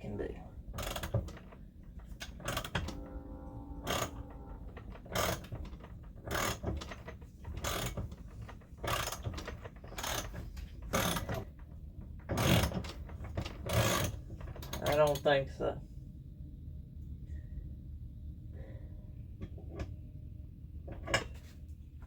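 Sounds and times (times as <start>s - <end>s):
ringing metal squeal: 2.8s - 4.9s.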